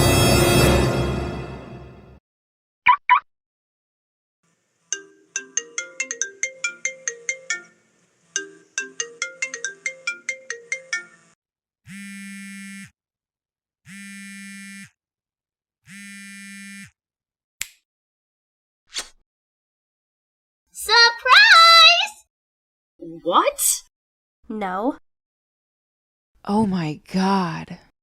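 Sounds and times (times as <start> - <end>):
plinking ringtone melody: 4.9 - 11.4
buzzing phone tones: 11.9 - 12.9, 13.9 - 15.0, 15.9 - 17.0.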